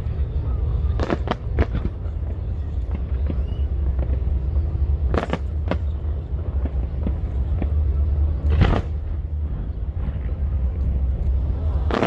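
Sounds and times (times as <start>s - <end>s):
low rumble: 0.0s - 12.0s
fireworks bangs and pops: 1.0s - 2.2s, 5.1s - 7.8s, 8.4s - 9.0s.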